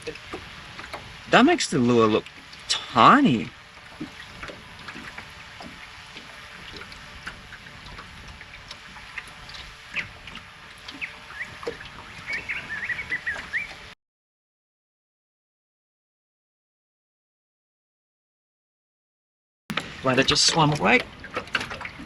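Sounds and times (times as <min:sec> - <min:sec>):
bird rising chirps: 0:12.2 - 0:13.7.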